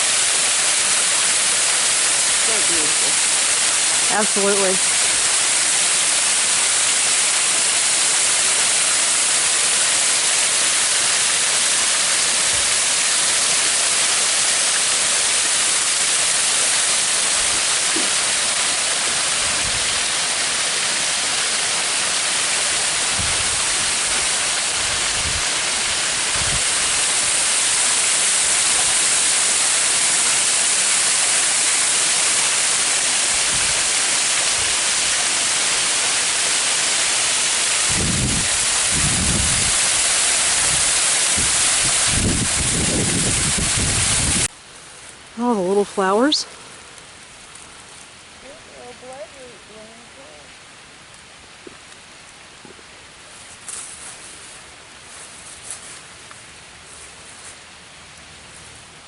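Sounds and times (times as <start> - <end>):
waterfall rushing: 0.0 - 44.5.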